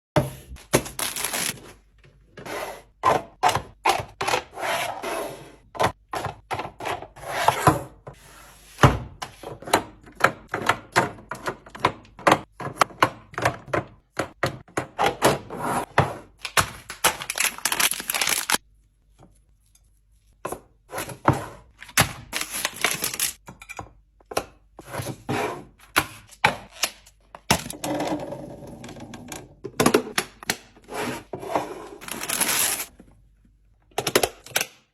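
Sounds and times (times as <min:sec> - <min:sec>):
packaging rustling: 0:00.7 - 0:01.6, 0:16.7 - 0:18.6, 0:22.4 - 0:23.4, 0:32.0 - 0:32.9.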